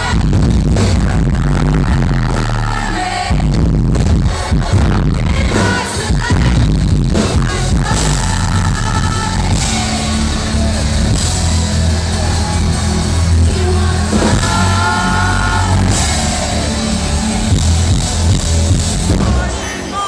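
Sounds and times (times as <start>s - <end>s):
electronic dance music: 0.0s - 20.0s
person singing: 4.3s - 20.0s.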